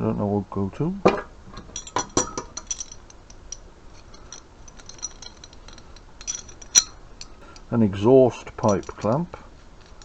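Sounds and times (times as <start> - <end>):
small metal items clinking: 1.7 - 7.7, 8.6 - 9.2.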